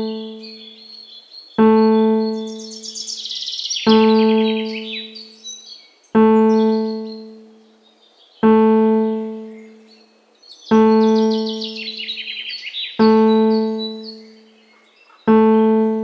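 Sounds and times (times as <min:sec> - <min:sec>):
soft electric piano note: 0:00.0 - 0:00.4, 0:01.6 - 0:02.6, 0:03.9 - 0:04.9, 0:06.2 - 0:07.4, 0:08.4 - 0:09.6, 0:10.7 - 0:11.8, 0:13.0 - 0:14.2, 0:15.3 - 0:16.0
songbird trills: 0:00.0 - 0:16.0.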